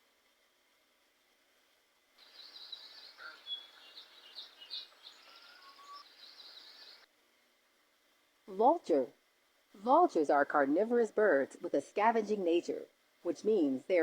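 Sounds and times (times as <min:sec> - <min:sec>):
faint outdoor hiss: 0:00.0 - 0:14.0
small birds chirping: 0:02.2 - 0:07.1.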